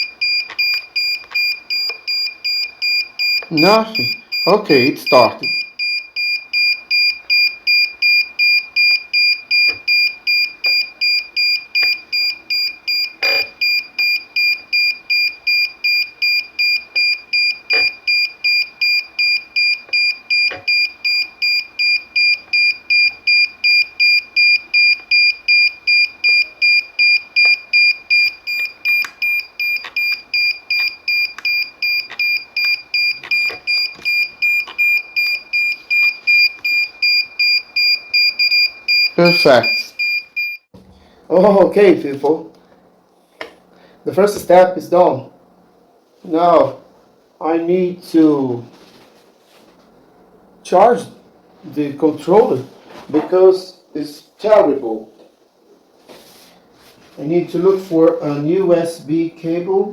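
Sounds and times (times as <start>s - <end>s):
remote controller beeping: 0.0s - 40.7s.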